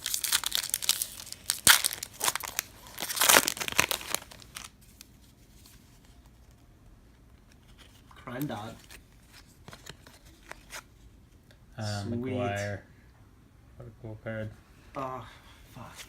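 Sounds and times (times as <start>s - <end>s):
wrapper crinkling and tearing: 0.0s - 5.1s.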